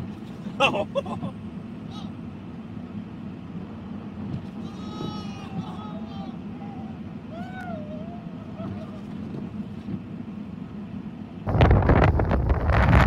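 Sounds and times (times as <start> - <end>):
steady low rumble: 0.0 - 13.0
wind buffeting microphone: 11.5 - 13.0.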